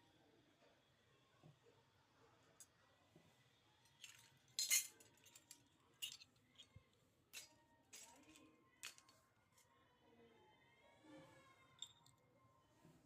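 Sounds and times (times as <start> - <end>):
toy kitchen pieces clinking: 3.9 - 9.2, 11.8 - 12.2.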